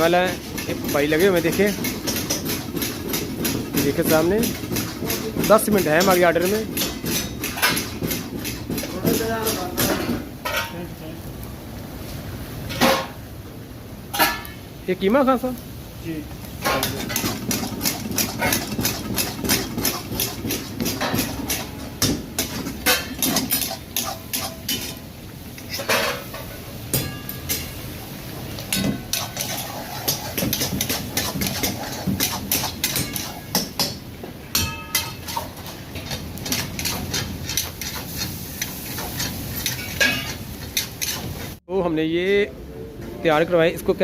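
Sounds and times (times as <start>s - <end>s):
metal utensils clanking on pans: 0.0s - 10.9s, 12.6s - 13.2s, 14.1s - 14.6s, 16.5s - 41.6s
low rumble of stoves: 0.0s - 41.6s
metal utensils knocking on cookware: 16.6s - 24.9s, 28.7s - 37.6s
metallic ring: 27.0s - 27.8s, 34.5s - 35.3s.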